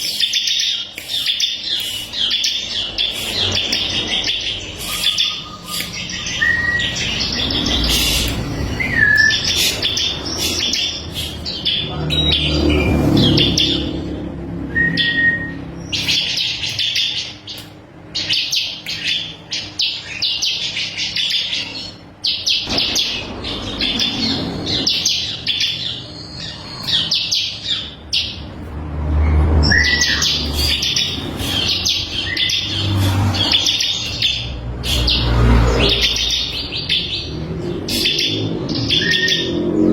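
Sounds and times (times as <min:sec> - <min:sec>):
bird chattering song: 0:00.0 - 0:28.6, 0:29.5 - 0:39.8
bird whistles: 0:00.7 - 0:11.6, 0:14.7 - 0:16.4, 0:29.6 - 0:32.8, 0:37.9 - 0:39.6.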